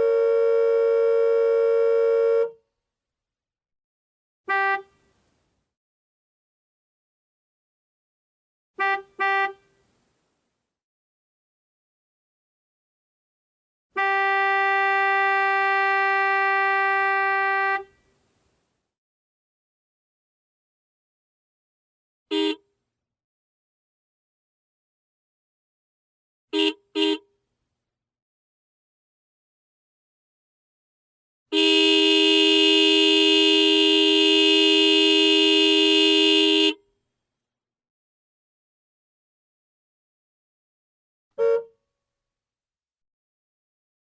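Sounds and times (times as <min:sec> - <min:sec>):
vehicle horn blast: 0:00.0 - 0:02.6, 0:04.5 - 0:05.1, 0:08.8 - 0:09.8, 0:13.9 - 0:18.1, 0:22.3 - 0:22.6, 0:26.5 - 0:27.3, 0:31.5 - 0:36.8, 0:41.4 - 0:41.8.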